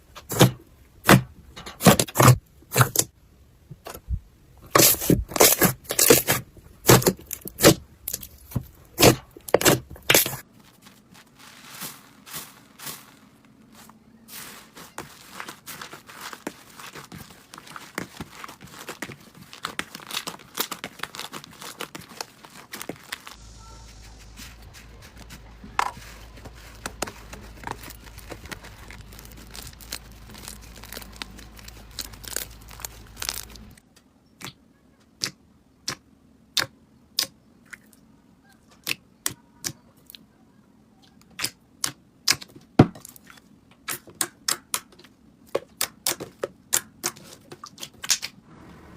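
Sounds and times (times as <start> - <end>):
slime crackling and popping: 15.2 - 23.4, 26.0 - 33.8.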